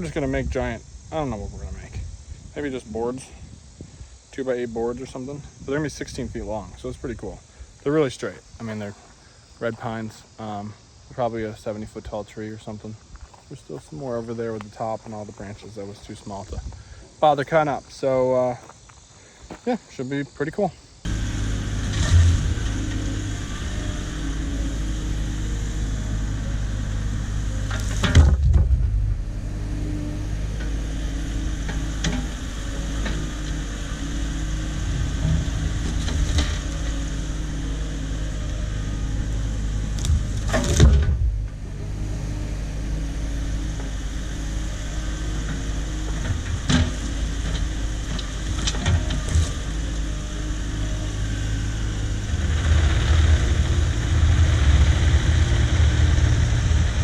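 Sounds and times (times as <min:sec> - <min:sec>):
engine running: 0:00.0 - 0:09.0, 0:21.0 - 0:57.0.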